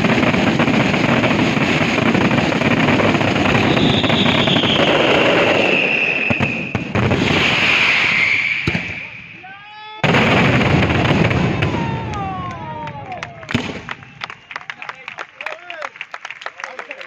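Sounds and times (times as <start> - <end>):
fireworks bursts and crackle: 0.0 - 17.0
firework whistle falling in pitch: 3.6 - 6.7, 7.4 - 9.1.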